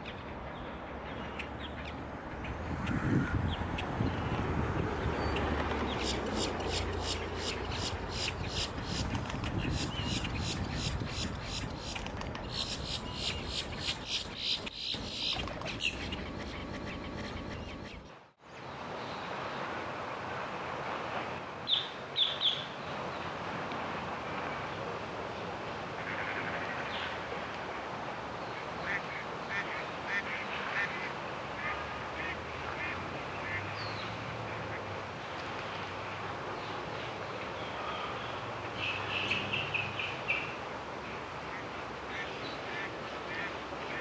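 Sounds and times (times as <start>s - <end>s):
birds calling: 0.0s - 18.2s
steady outdoor background noise: 0.0s - 44.0s.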